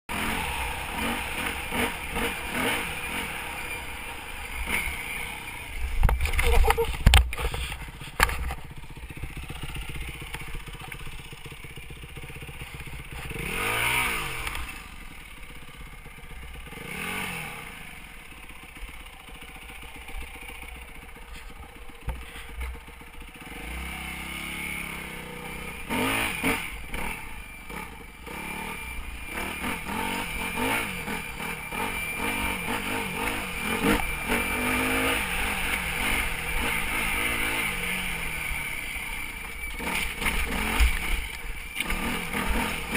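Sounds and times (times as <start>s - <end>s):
dirt bike engine revving: 0.1s - 42.9s
clatter from rough ground: 0.9s - 16.8s, 18.3s - 24.0s, 25.3s - 42.9s
high-pitched whine: 22.8s - 42.9s.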